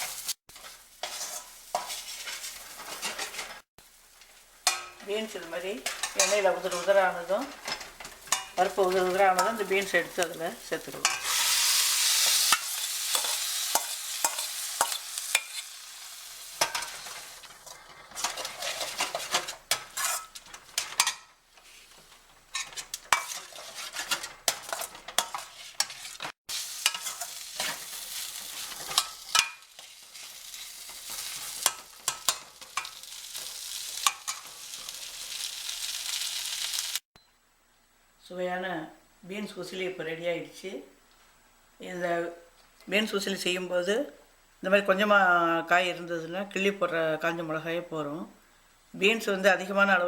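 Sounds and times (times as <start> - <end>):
spatula scraping a pan: 0.0 - 5.0, 5.8 - 35.4
light sizzle: 0.0 - 37.1.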